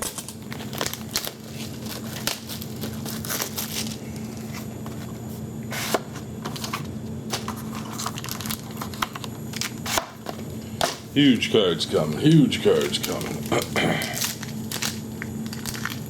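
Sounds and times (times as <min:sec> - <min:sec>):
wrapper crinkling and tearing: 0:00.0 - 0:04.6, 0:07.3 - 0:09.9, 0:11.9 - 0:16.0
steady low hum: 0:00.0 - 0:16.0.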